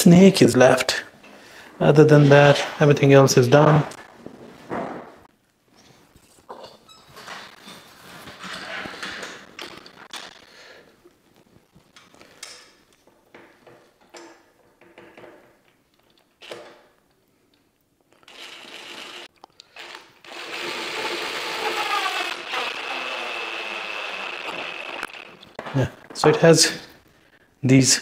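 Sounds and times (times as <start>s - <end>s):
electric motor whirring: 19.9s - 25.6s.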